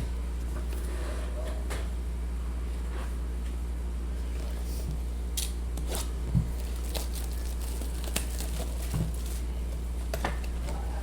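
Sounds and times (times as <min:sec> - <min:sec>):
low electrical hum: 0:00.0 - 0:11.0
card packs clicking and crinkling: 0:05.4 - 0:10.9.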